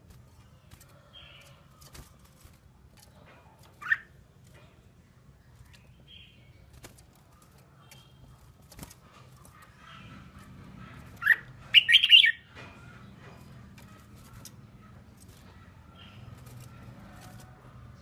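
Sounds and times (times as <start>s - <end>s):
bird chirping: 3.0s - 4.8s, 5.4s - 18.0s.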